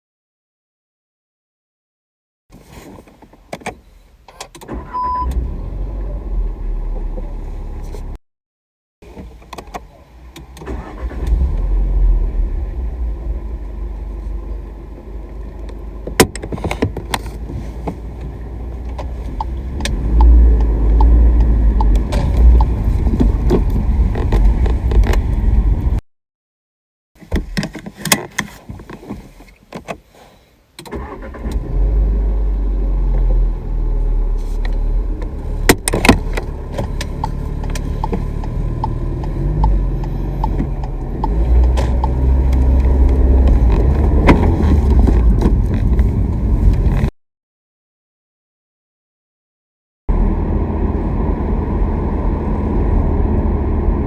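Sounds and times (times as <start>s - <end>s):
car engine running: 34.0s - 47.1s.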